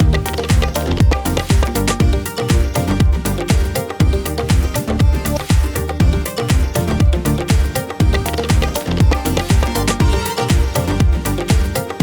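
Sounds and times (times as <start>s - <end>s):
electronic dance music: 0.0s - 12.0s.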